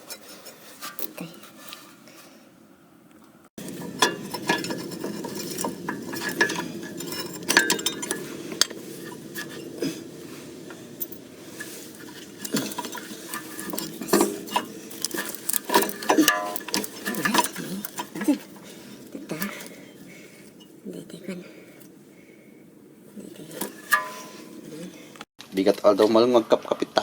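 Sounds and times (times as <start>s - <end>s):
metal tools clinking and clattering: 3.6s - 20.8s, 23.4s - 25.0s
steady low hum: 3.6s - 25.2s.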